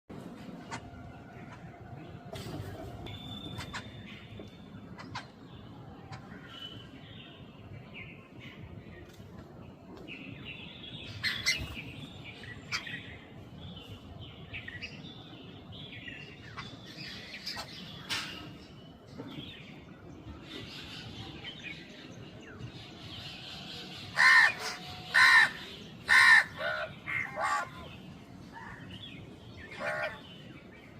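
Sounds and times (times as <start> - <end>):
crow cawing: 24.2 - 27.7.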